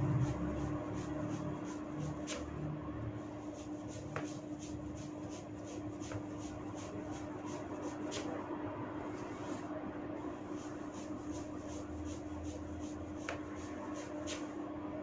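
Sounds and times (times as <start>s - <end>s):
steady low hum: 0.0s - 15.0s
hands rubbing through hair: 3.4s - 8.4s, 10.4s - 14.6s.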